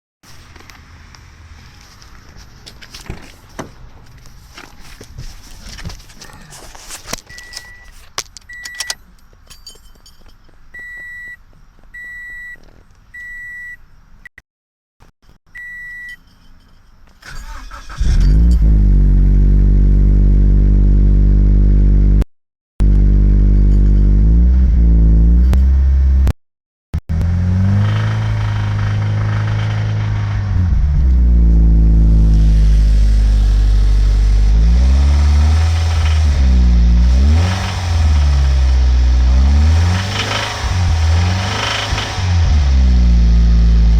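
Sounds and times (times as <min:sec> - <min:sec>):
car warning chime beeping: 0:07.3 - 0:09.1, 0:10.8 - 0:11.4, 0:12.0 - 0:12.6, 0:13.2 - 0:13.8, 0:15.5 - 0:16.2
car engine running and revving: 0:17.4 - 0:22.2, 0:22.8 - 0:26.3, 0:27.0 - 0:43.9.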